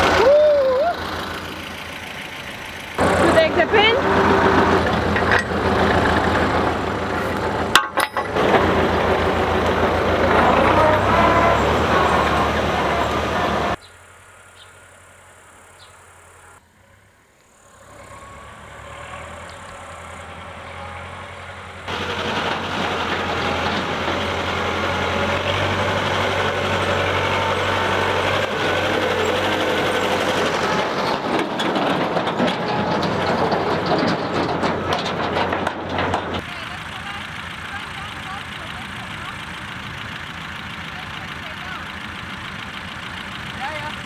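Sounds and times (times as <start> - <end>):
tractor engine running: 0.0 - 44.0.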